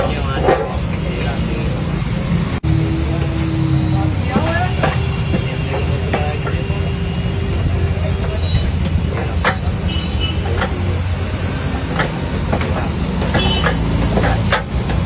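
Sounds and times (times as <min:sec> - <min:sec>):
sharp clicks and knocks: 0:04.3 - 0:06.7, 0:08.0 - 0:15.0.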